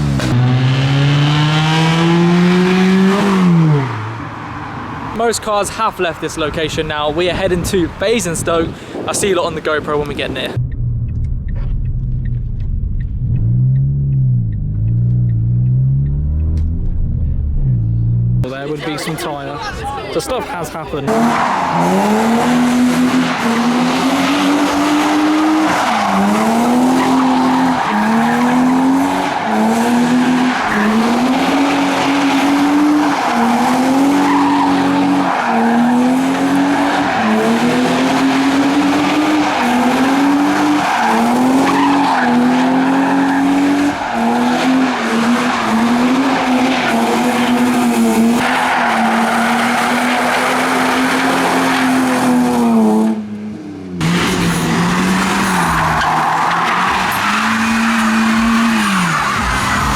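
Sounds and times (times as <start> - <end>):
car engine revving hard: 0.0 - 5.2, 21.1 - 53.3, 53.9 - 59.9
tyre squeal: 54.1 - 59.9.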